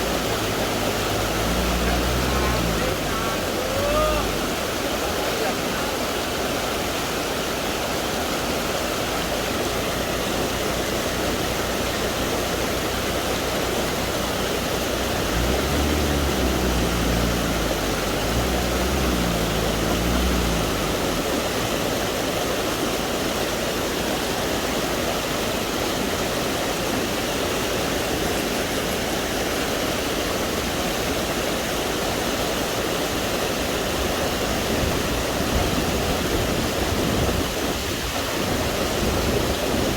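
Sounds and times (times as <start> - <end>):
low engine note: 0.0 - 6.0, 8.9 - 22.7
waterfall rushing: 0.0 - 39.9.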